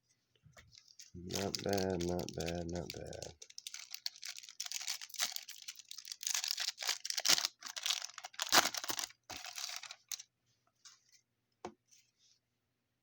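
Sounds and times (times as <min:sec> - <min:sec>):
foil pack tearing and crinkling: 0:01.3 - 0:10.2.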